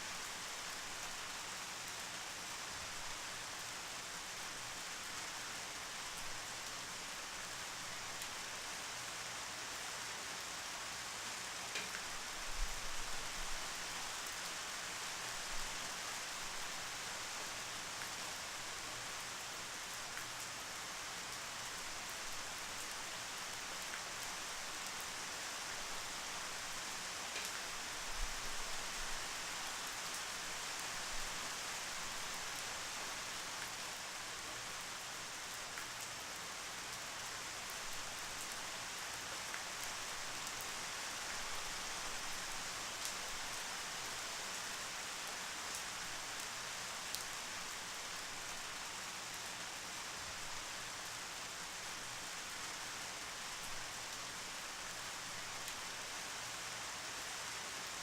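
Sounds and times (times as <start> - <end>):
steady rain hiss: 0.0 - 58.0
raindrop ticks: 11.7 - 12.0, 27.3 - 27.6.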